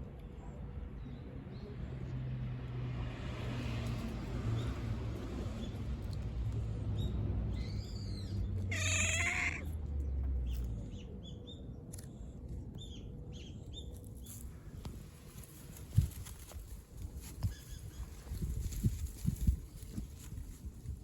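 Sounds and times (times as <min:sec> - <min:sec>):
cat meowing: 0:08.7 - 0:09.7.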